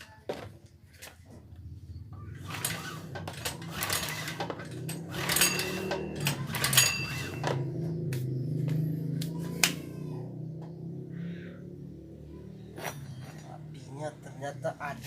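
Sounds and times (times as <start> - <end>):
metal tools clinking and clattering: 2.5 - 7.6, 12.7 - 13.9.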